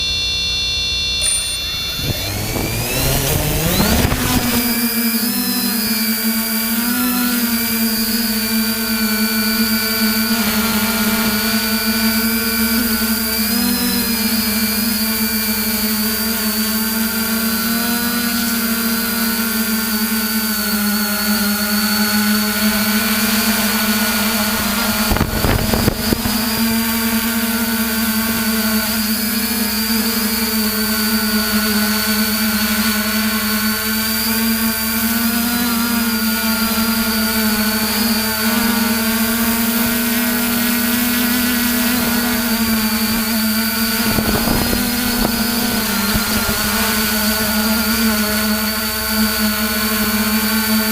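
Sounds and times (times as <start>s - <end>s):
drone propellers whining: 0.0s - 50.9s
knocks and buffeting: 1.6s - 6.0s, 22.4s - 29.2s, 39.4s - 49.0s.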